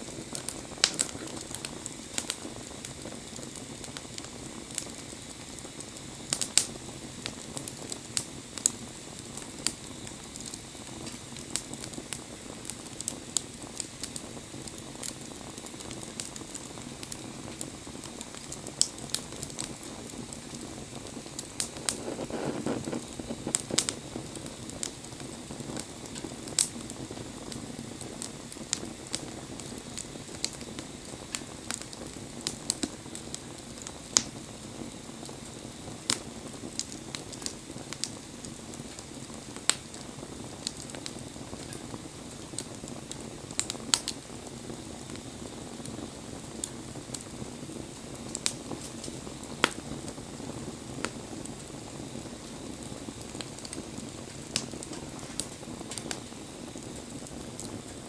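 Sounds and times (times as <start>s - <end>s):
bonfire pops and snaps: 0.0s - 58.0s
low rush of burning fire: 0.0s - 58.0s.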